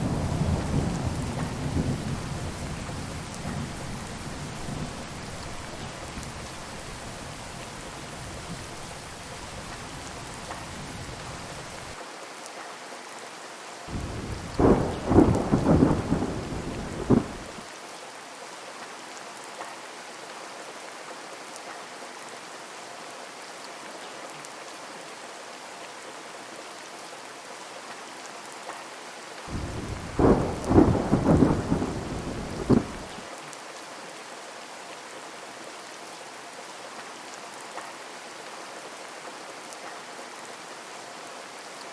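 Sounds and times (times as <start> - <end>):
crackling thunder peals: 0.0 - 5.2, 13.9 - 17.6, 29.5 - 33.2
heavy rain: 0.0 - 41.9.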